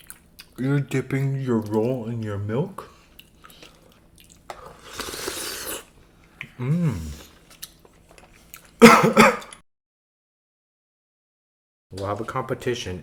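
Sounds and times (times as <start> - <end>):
chewing and wet mouth noises: 0.0 - 8.8
person humming: 6.5 - 7.3.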